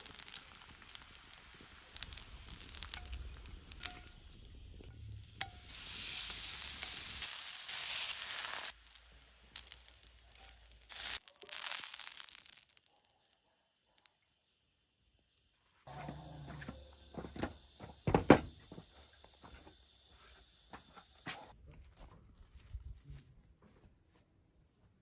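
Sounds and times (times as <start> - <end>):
food sizzling in hot oil: 0.0 - 13.4.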